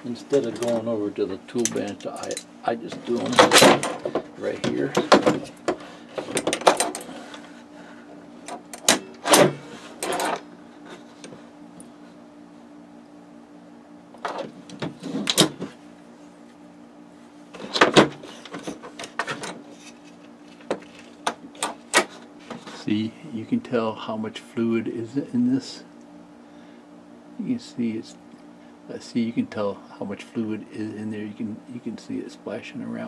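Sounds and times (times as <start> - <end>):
steady low hum: 0.0 - 33.0
tools clicking and clattering: 0.3 - 0.9, 1.6 - 7.4, 8.4 - 10.4.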